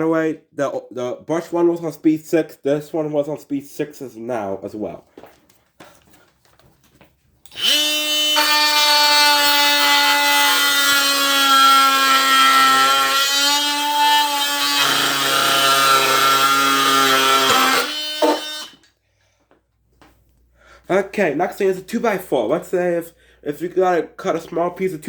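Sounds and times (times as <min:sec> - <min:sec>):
oscillating multi-tool cutting wood: 0:07.5 - 0:18.8.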